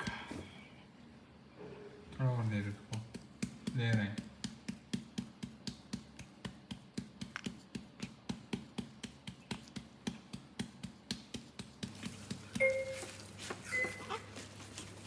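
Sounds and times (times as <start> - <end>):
brief steady beep: 12.6 - 13.1.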